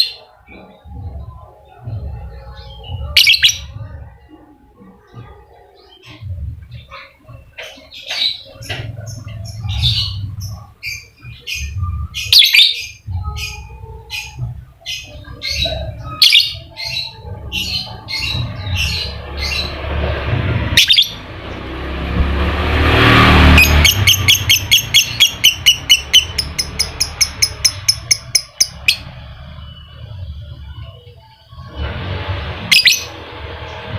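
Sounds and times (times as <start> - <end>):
lovebird chirping: 0.9 - 3.8, 5.2 - 19.8, 23.6 - 31.5
low rumble: 15.8 - 33.9.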